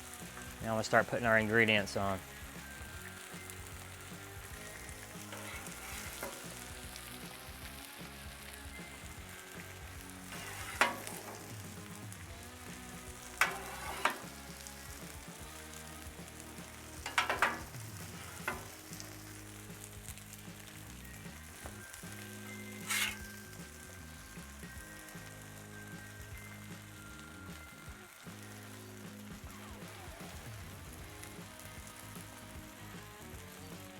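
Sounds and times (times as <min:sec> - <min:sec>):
cheese sizzling on a griddle: 0:00.0 - 0:33.9
sharp clicks and clatters: 0:17.0 - 0:18.9.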